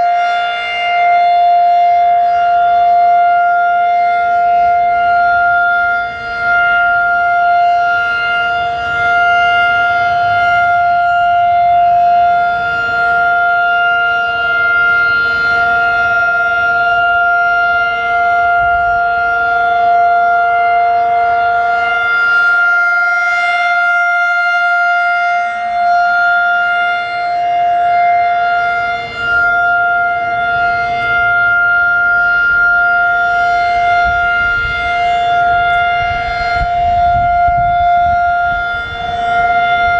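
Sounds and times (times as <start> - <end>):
warning siren steady tone: 0.0 - 39.9
wind buffeting microphone: 15.5 - 21.1, 28.8 - 39.9.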